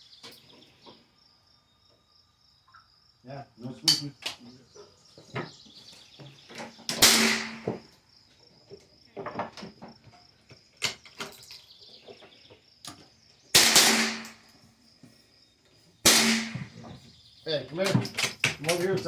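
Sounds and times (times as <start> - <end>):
insect chirping: 0.0 - 19.0
rifle shots: 7.0 - 7.8, 13.6 - 14.4, 16.0 - 16.8.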